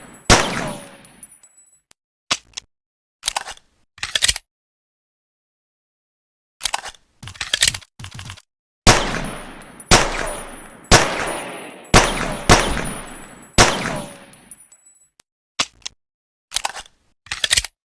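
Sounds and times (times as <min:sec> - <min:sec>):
pistol shots echoing: 0:00.0 - 0:01.1, 0:08.9 - 0:14.6.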